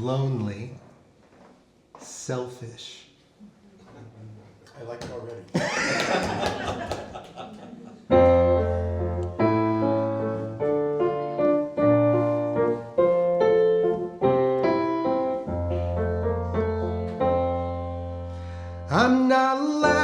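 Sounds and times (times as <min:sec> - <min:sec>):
keyboard chords: 0:08.1 - 0:20.0.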